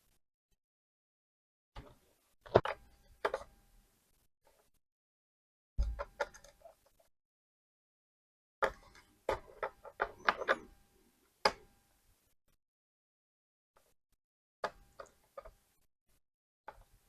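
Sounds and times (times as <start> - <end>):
laptop parts clicking and knocking: 1.8 - 3.6, 5.8 - 7.1, 8.6 - 10.8, 14.6 - 15.7, 16.7 - 17.0.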